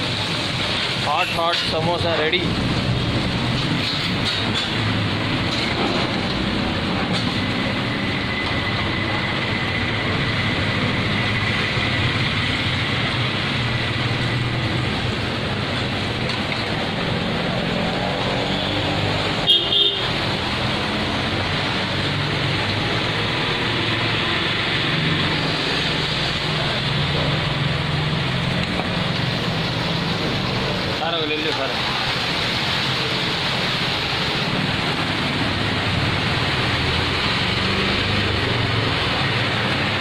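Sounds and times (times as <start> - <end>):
street traffic: 0.0 - 40.0
car horn toot: 19.4 - 20.1.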